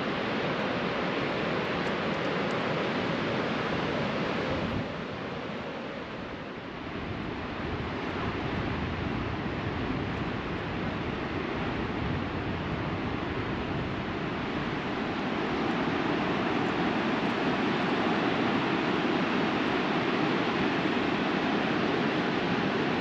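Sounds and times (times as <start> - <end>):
wind buffeting microphone: 0.0 - 5.5, 6.1 - 23.0
ocean surf rushing: 0.0 - 23.0.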